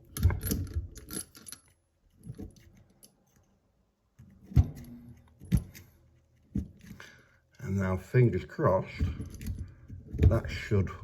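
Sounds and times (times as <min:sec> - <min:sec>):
handcuffs clinking and rattling: 0:00.1 - 0:03.2.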